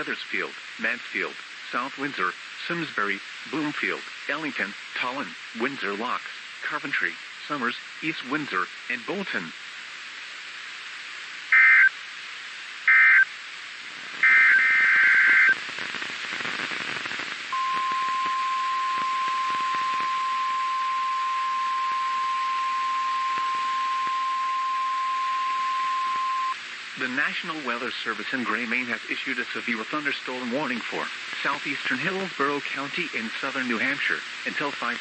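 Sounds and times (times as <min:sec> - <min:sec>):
radio hiss: 0:00.0 - 0:35.0
steady high alarm beep: 0:17.6 - 0:26.6.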